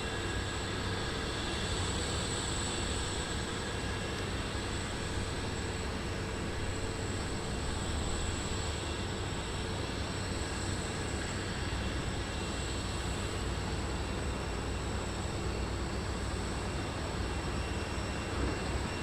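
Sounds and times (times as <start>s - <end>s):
jet engine whine: 0.0s - 19.0s.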